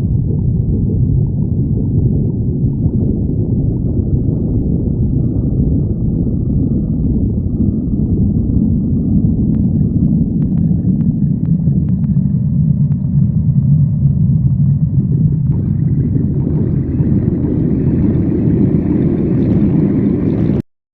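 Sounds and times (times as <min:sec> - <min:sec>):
stomach growling: 0:00.0 - 0:20.6
faint clicks: 0:10.4 - 0:12.2.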